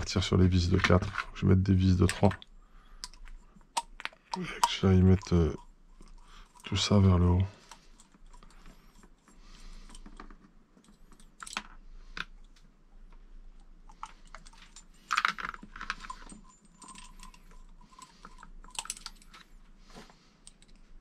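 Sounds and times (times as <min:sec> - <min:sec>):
small plastic parts clicking: 0:02.0 - 0:06.8, 0:09.8 - 0:12.7, 0:13.6 - 0:19.5.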